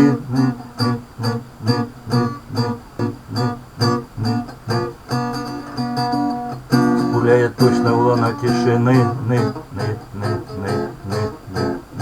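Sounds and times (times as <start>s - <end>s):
acoustic guitar strumming: 0.0s - 12.0s.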